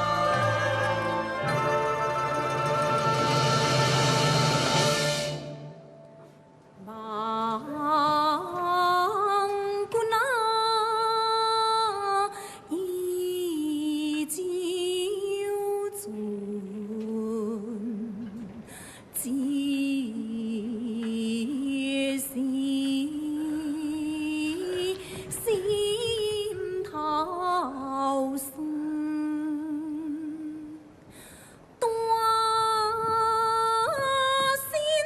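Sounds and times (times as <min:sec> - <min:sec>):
person singing opera aria: 0:00.0 - 0:05.5
light accompaniment: 0:00.0 - 0:06.7.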